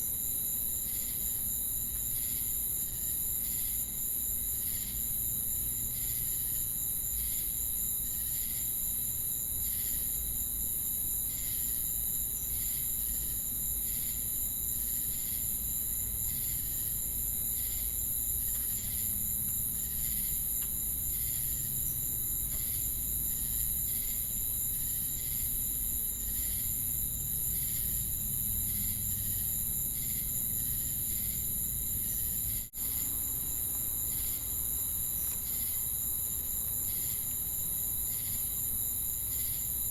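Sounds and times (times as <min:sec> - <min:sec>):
crickets and cicadas chirping: 0:00.0 - 0:39.9.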